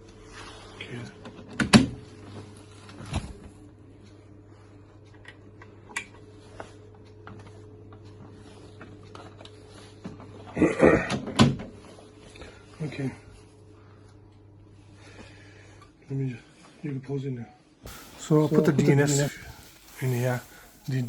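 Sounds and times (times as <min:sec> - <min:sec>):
steady low hum: 0:17.9 - 0:21.0.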